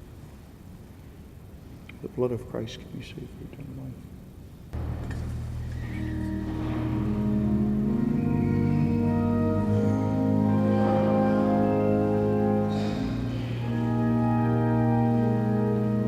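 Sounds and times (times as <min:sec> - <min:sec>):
church organ chords: 0:04.8 - 0:16.0.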